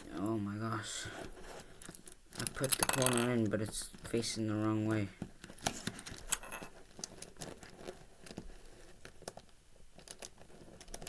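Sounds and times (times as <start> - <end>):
plastic cube pieces clicking: 2.0 - 3.5.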